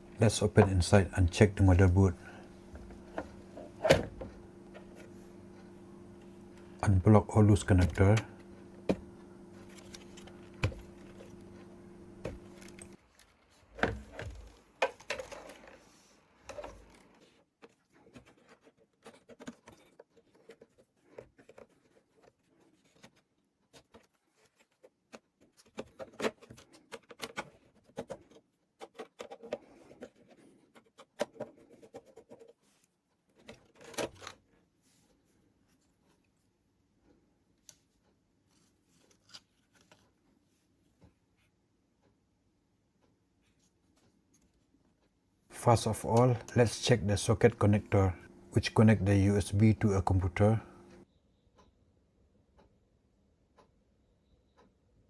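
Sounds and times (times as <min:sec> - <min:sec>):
hands clicking and scraping plastic: 0:00.0 - 0:13.0, 0:16.5 - 0:22.2, 0:22.8 - 0:32.6
steady low hum: 0:00.0 - 0:13.0, 0:45.5 - 0:51.0
wire connectors unplugging: 0:00.2 - 0:13.0.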